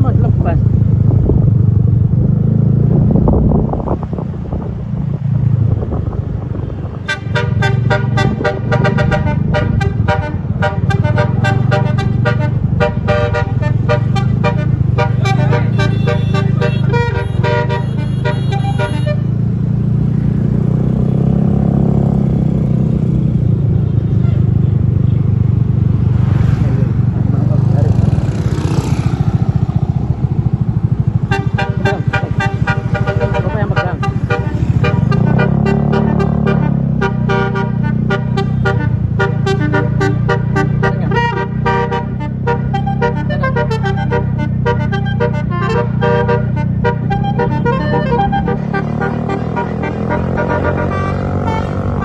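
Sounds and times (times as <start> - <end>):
bus engine rumble: 0.0 - 52.0
bus multi-tone horn playing tune: 7.0 - 19.5, 31.2 - 52.0.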